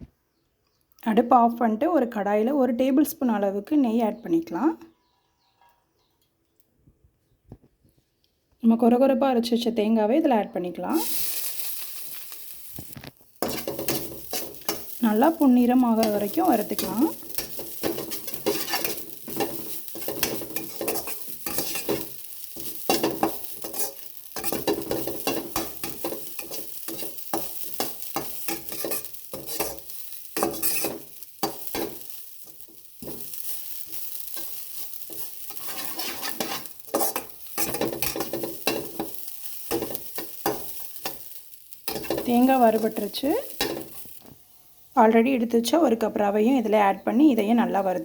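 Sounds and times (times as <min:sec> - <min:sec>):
coconut sizzling in a pan: 0:10.2 - 0:48.0
utensil scraping a pan: 0:11.0 - 0:41.2, 0:41.8 - 0:43.0.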